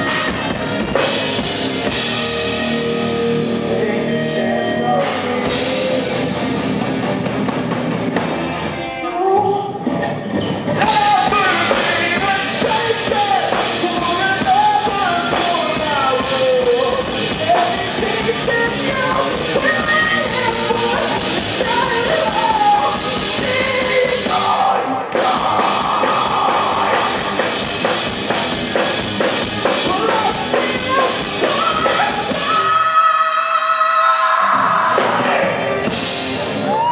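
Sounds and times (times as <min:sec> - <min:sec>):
loud drums: 0:00.0 - 0:04.2, 0:04.8 - 0:36.9
bass: 0:00.0 - 0:36.9
distorted guitars: 0:00.0 - 0:36.9
person singing: 0:02.6 - 0:06.2, 0:08.8 - 0:10.1, 0:10.8 - 0:27.4.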